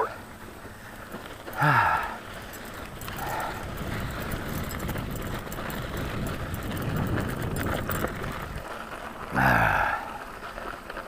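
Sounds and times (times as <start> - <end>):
bike clicks and rattles: 0.0 - 11.0
bike tyres crunching on gravel: 0.0 - 11.0
wind on microphone: 2.9 - 8.7.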